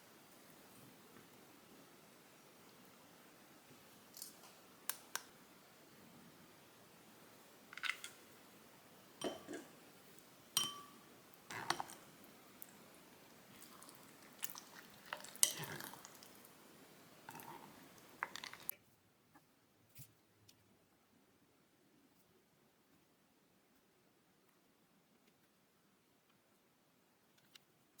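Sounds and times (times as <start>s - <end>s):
microphone hiss: 0.0s - 28.0s
small hard objects clicking: 18.2s - 18.7s.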